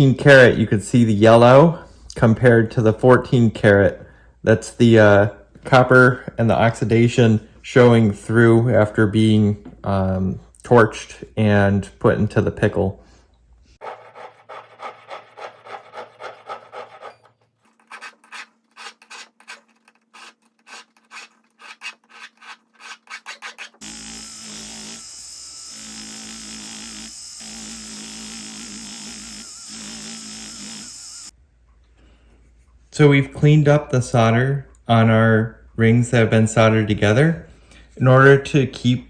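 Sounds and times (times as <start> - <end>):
hand saw and file strokes: 13.8 - 23.8
motor-driven tool humming: 23.8 - 31.3.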